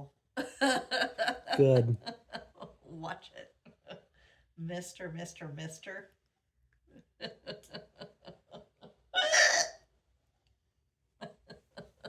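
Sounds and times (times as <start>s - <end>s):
person laughing: 0.7s - 2.1s.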